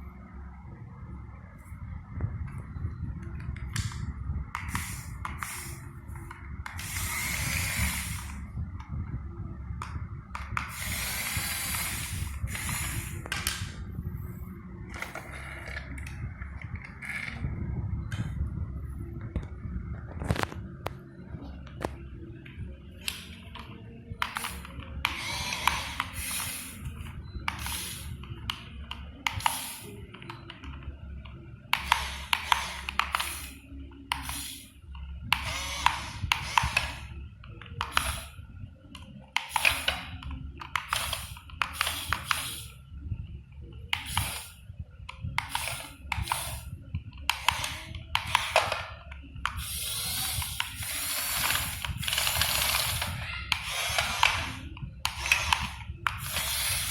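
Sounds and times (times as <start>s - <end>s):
whirring and scraping: 1.6s - 56.9s
model excavator motor hum: 3.4s - 9.0s, 10.4s - 17.7s, 23.0s - 30.8s, 35.2s - 38.4s, 45.2s - 56.9s.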